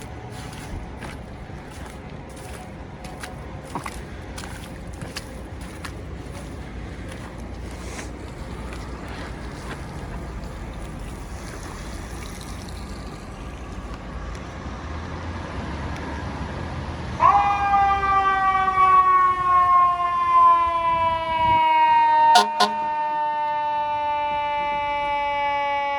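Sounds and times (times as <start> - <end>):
street traffic rumble: 0.0 - 25.9
fire truck air horn blast: 21.2 - 25.9.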